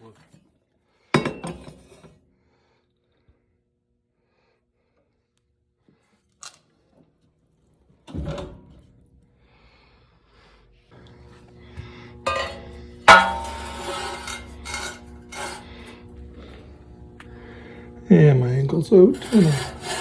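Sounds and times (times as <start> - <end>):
steel parts clanking: 12.3 - 15.7.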